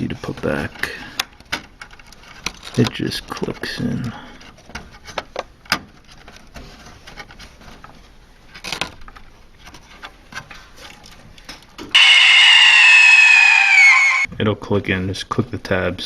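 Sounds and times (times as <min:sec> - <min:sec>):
loud falling tones: 0:12.0 - 0:14.3.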